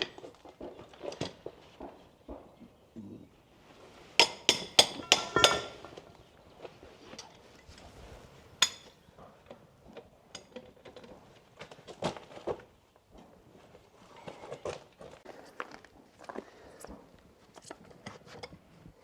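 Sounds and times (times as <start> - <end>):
hand tools tapping on metal: 4.2 - 6.1, 8.6 - 11.1.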